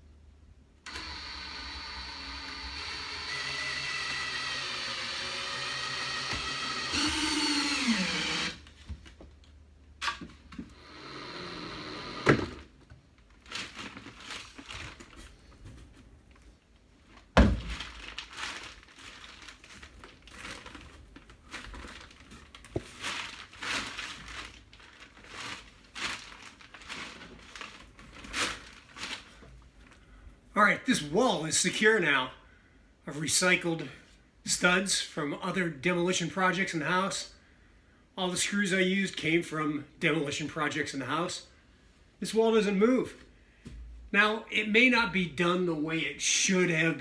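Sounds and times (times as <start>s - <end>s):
power drill driving screws: 0.9s - 8.7s, 10.7s - 12.7s.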